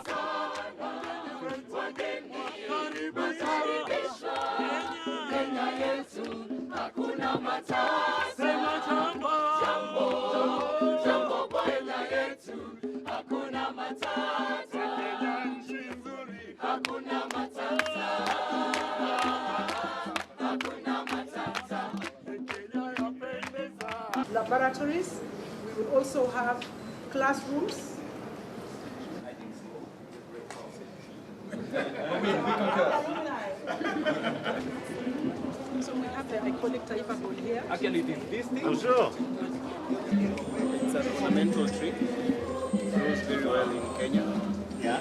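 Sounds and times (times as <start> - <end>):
choir singing: 0.0 - 24.2, 33.7 - 45.0
steady drumbeat: 0.0 - 24.4, 34.3 - 45.0.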